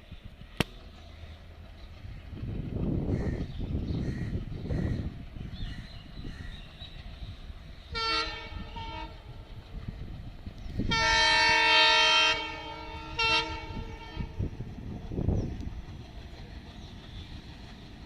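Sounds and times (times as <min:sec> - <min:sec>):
train rumbling: 0:00.0 - 0:18.0
locomotive horn blasts: 0:07.9 - 0:09.3, 0:10.9 - 0:14.5.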